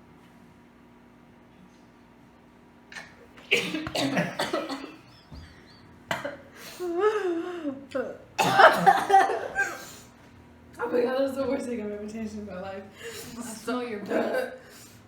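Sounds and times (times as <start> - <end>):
person coughing and gagging: 3.0 - 5.1, 6.1 - 6.5, 8.4 - 9.9, 14.1 - 14.6.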